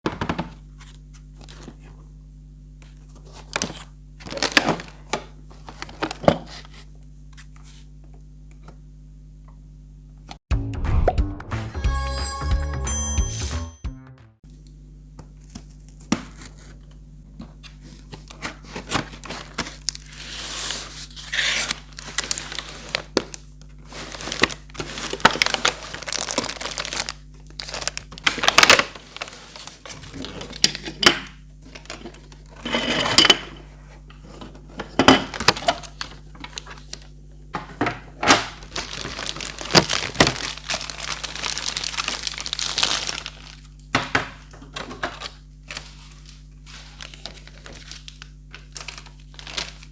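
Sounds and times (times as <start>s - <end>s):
plastic and cardboard crinkling: 2.8s - 8.0s, 15.3s - 32.8s, 33.8s - 49.9s.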